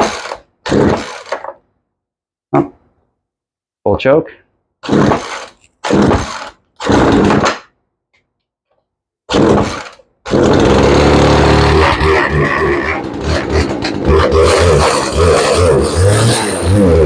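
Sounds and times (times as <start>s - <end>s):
chainsaw engine running unevenly: 0.0s - 1.6s, 4.8s - 7.5s, 9.3s - 17.0s
chainsaw starter cord pulls: 0.0s - 1.6s, 4.8s - 7.7s, 9.3s - 17.0s.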